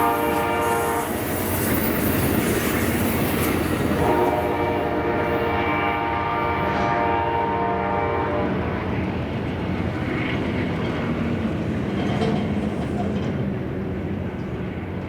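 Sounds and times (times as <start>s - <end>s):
locomotive air horn chord: 0.0s - 1.2s, 4.0s - 8.5s
train wheels rumbling on rails: 0.0s - 6.9s, 7.5s - 15.0s.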